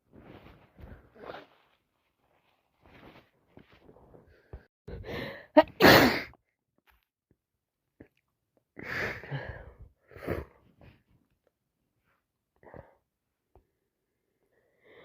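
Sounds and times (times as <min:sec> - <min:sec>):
woman sneezing hard: 0:05.6 - 0:06.3.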